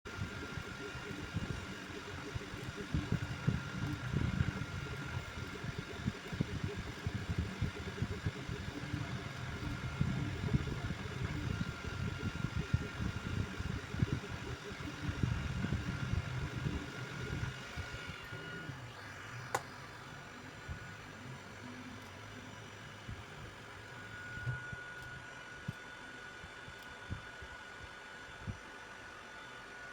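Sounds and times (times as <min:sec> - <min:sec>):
steady thin whine: 0:00.1 - 0:29.9
stepper motors buzzing: 0:00.2 - 0:18.8.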